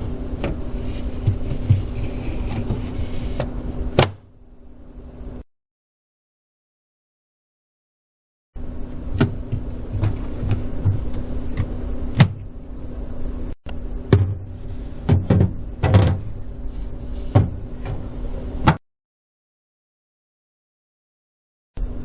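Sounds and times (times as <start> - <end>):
refrigerator shelf sliding into rails: 0.0 - 4.2, 9.0 - 12.5, 14.4 - 18.8
steady low hum: 0.0 - 5.5, 8.6 - 18.8, 21.8 - 22.0.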